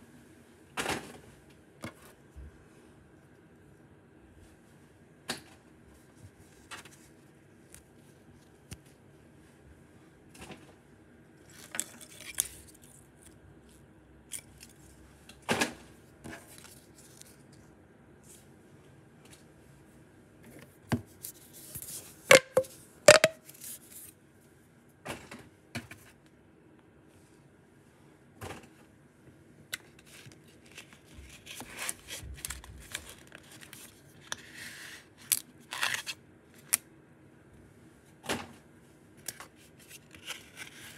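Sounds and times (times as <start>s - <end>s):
toy packaging rustling: 30.0s - 34.2s, 35.3s - 36.7s.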